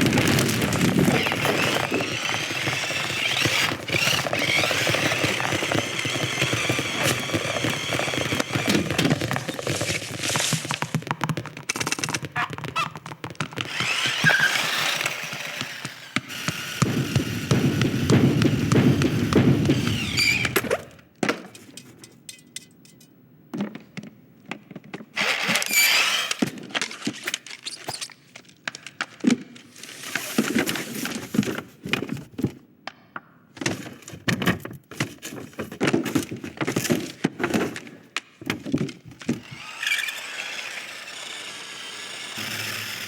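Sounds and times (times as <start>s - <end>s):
high squeals: 13.8s - 16.0s, 19.7s - 20.7s, 25.2s - 26.4s, 39.5s - 42.9s.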